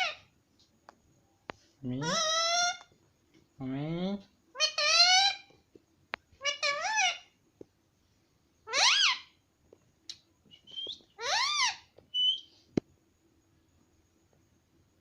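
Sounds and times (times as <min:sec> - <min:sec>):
parrot calls rising and falling: 0:04.6 - 0:05.5, 0:08.6 - 0:09.3, 0:10.7 - 0:12.5
short high whistles: 0:10.5 - 0:11.1.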